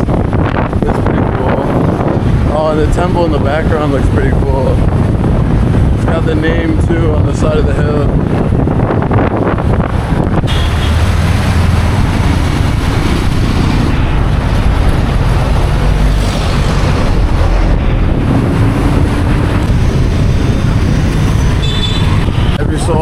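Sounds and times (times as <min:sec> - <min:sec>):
road noise: 0:00.0 - 0:23.0
wind buffeting microphone: 0:00.0 - 0:23.0
vehicle engine running: 0:08.1 - 0:22.5.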